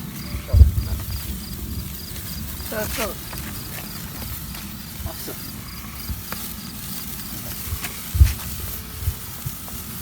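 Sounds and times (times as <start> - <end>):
low thumps: 0.0 - 4.7
insect chirping: 0.0 - 9.6
outdoor hiss: 0.0 - 10.0.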